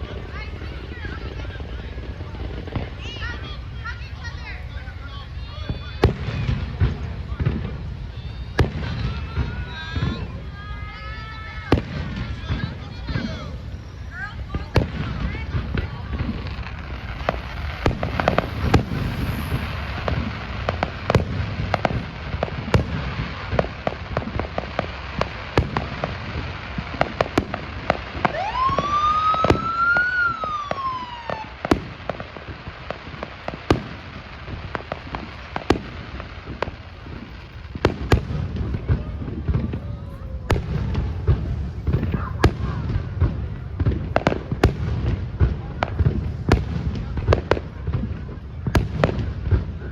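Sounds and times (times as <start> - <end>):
fireworks bangs and crackles: 0.0 - 49.9
low rumble: 14.5 - 23.5
rising and falling whistle: 16.6 - 21.9, 28.3 - 31.6.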